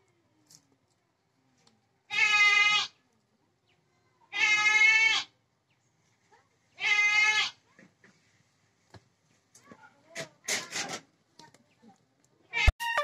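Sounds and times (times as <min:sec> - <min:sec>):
goat bleating: 0:02.1 - 0:03.0, 0:04.3 - 0:05.3, 0:06.8 - 0:07.6.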